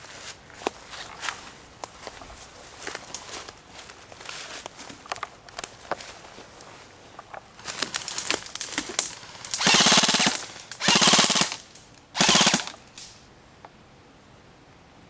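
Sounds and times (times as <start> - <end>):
faint clicks and rustles: 0.0 - 13.8
airsoft gun full-auto bursts: 8.1 - 13.1.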